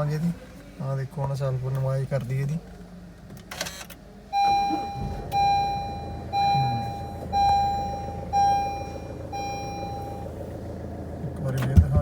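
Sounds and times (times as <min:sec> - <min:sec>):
low steady hum: 0:04.1 - 0:12.0
car warning chime beeping: 0:04.3 - 0:10.6.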